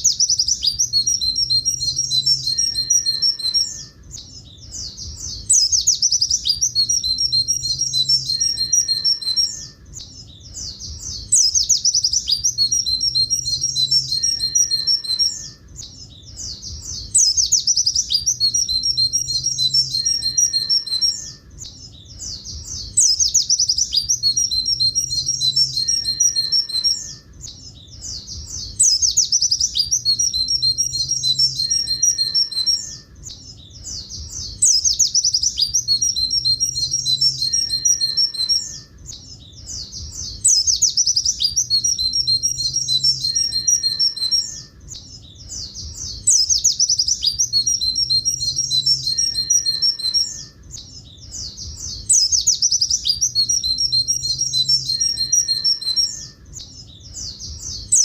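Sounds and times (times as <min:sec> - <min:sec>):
bird singing trill and notes: 0:00.0 - 0:58.0.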